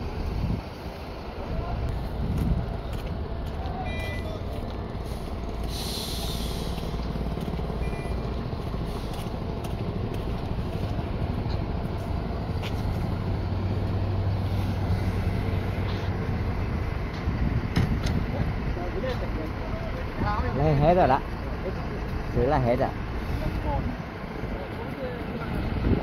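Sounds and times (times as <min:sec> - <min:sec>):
diesel engine rumbling: 0:00.0 - 0:26.0
short hiss: 0:05.1 - 0:06.9.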